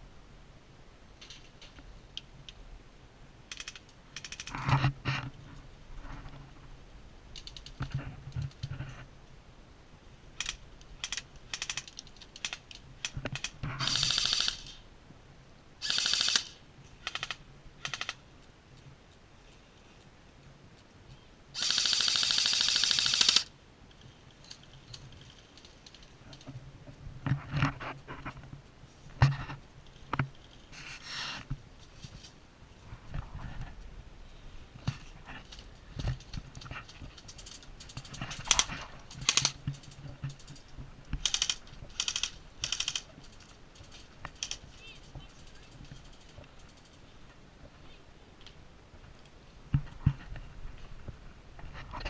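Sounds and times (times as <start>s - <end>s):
airsoft guns firing: 13.4s - 14.8s, 15.8s - 18.2s, 21.6s - 23.5s.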